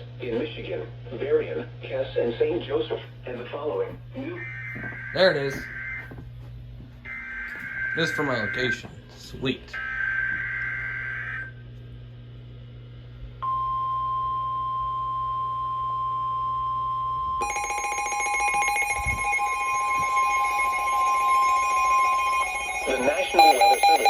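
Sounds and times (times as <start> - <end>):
rapidly pulsing electronic alarm: 4.2 - 6.2, 7.0 - 8.9, 9.8 - 11.6, 15.5 - 24.0
steady warning alarm tone: 4.2 - 6.2, 7.0 - 8.9, 9.7 - 11.6, 13.4 - 24.0
warbling data screech: 4.4 - 6.1, 7.1 - 8.8, 9.8 - 11.5, 18.5 - 24.0.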